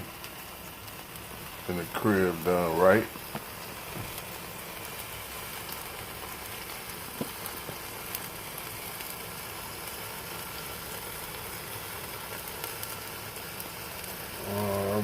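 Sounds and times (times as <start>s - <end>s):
chicken sizzling on grill: 0.0s - 15.0s
fat popping: 3.2s - 4.2s.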